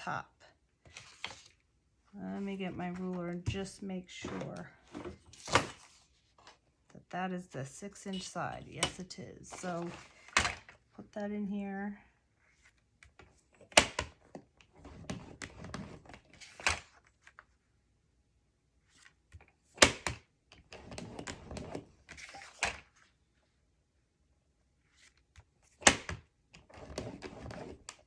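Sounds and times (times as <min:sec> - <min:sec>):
scoring tool scraping paper: 0:26.6 - 0:28.0.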